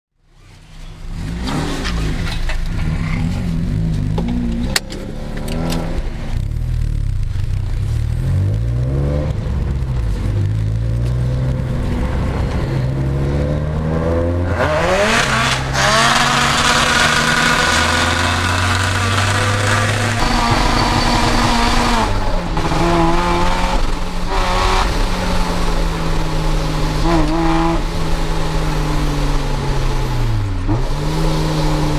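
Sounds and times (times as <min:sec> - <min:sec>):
car engine revving: 0:00.4 - 0:31.9
sharp exhaust crack: 0:15.0 - 0:31.9
tyres squealing: 0:15.4 - 0:31.9.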